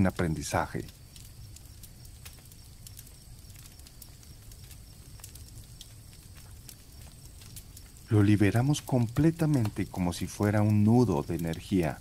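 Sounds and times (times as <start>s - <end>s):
campfire crackling and popping: 0.0s - 12.0s
crickets chirping: 0.0s - 12.0s.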